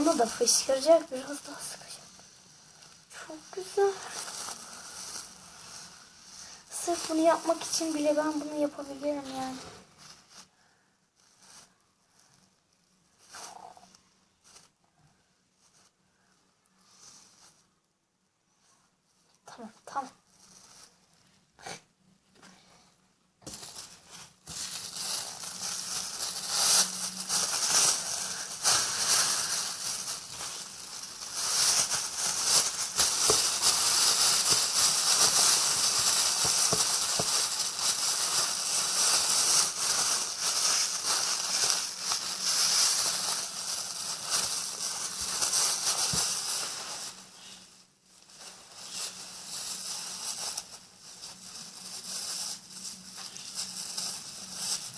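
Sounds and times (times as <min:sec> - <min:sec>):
soap foam crackling hiss: 0:00.0 - 0:10.5, 0:23.5 - 0:54.9
plastic bag crinkling: 0:00.0 - 0:14.8, 0:23.4 - 0:54.9.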